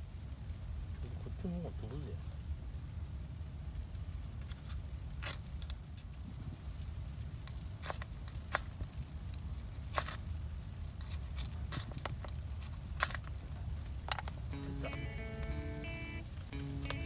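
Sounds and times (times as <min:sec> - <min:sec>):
wind rumble on microphone: 0:00.1 - 0:14.6
acoustic guitar music: 0:14.5 - 0:17.0.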